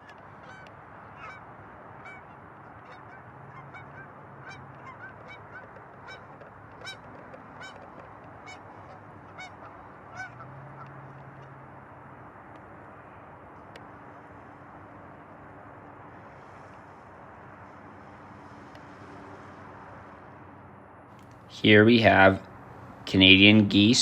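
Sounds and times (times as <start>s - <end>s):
geese honking: 0.0s - 10.9s
steady background hiss: 13.9s - 24.0s.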